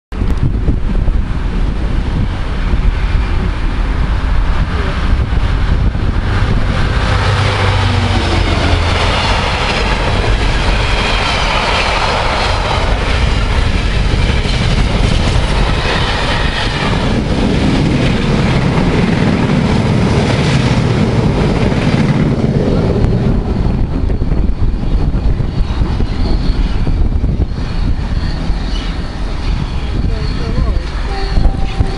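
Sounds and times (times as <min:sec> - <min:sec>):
train passing on rails: 0:00.2 - 0:31.9.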